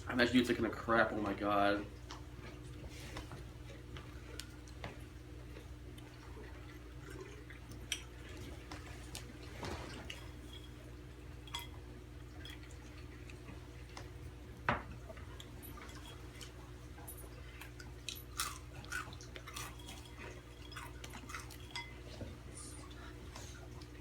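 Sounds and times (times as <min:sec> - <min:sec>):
steady low hum: 0:00.0 - 0:24.0
crunching chips: 0:18.0 - 0:21.7.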